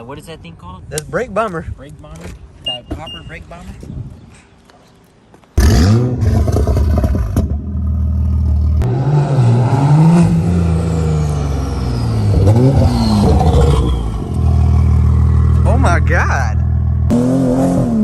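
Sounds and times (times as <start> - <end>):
car engine revving hard: 5.6 - 7.4, 8.8 - 15.2, 17.0 - 18.0.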